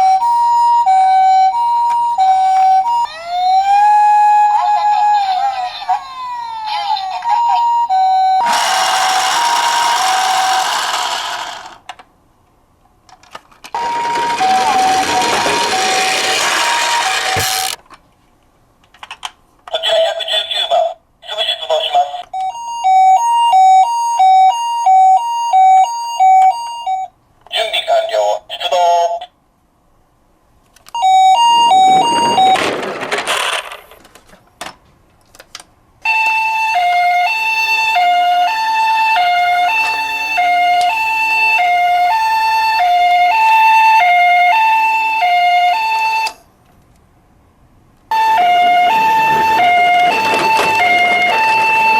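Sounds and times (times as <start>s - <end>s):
toy siren two-tone: 0.0s - 11.5s, 13.8s - 17.8s, 22.3s - 27.1s, 31.0s - 32.8s, 36.0s - 46.4s, 48.1s - 51.9s
clattering: 13.7s - 17.8s, 31.6s - 34.8s, 48.9s - 51.9s.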